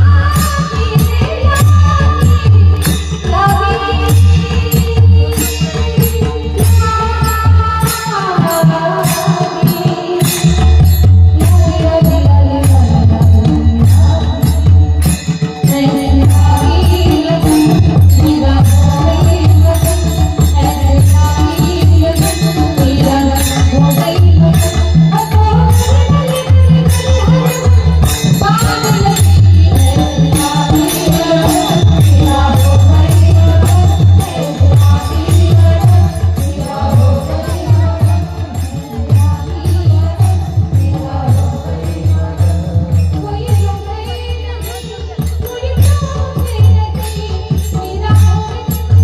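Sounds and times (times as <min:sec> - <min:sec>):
jingling percussion: 0:00.0 - 0:49.0
voices singing: 0:15.6 - 0:47.5.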